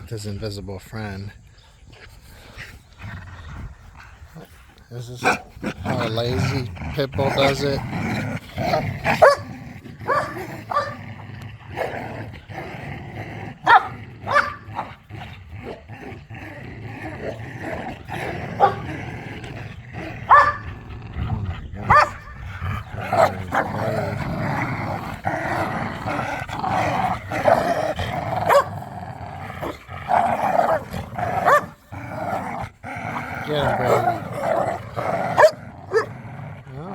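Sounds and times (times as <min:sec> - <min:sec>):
dogs growling and snarling: 0:00.0 - 0:36.9
dogs barking and yipping: 0:08.4 - 0:11.1, 0:13.6 - 0:15.9, 0:18.3 - 0:18.9, 0:20.2 - 0:28.9, 0:29.6 - 0:32.8, 0:33.4 - 0:36.2.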